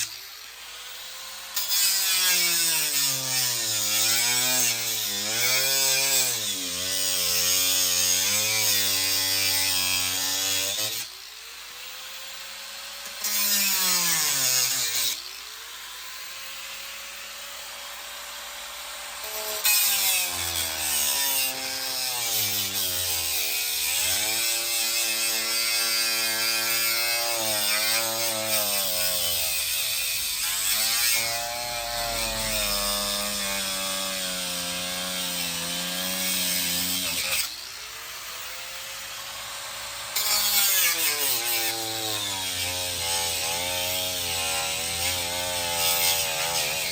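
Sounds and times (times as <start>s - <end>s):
power saw cutting wood: 0.0s - 46.9s.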